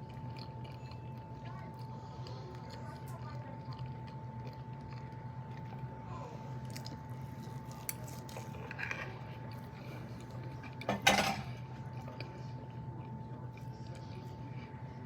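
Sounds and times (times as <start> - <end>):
cutlery clinking against dishes: 10.8 - 11.6.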